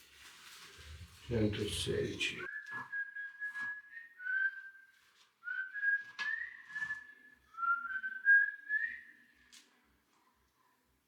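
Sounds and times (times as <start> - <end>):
person whistling a tune: 2.5 - 9.4.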